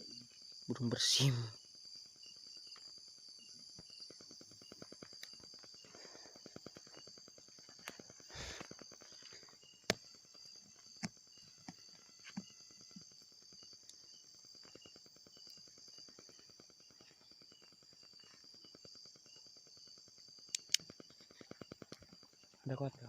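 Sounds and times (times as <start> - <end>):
crickets chirping: 0.0 - 23.0
sharp clicks: 20.5 - 22.1.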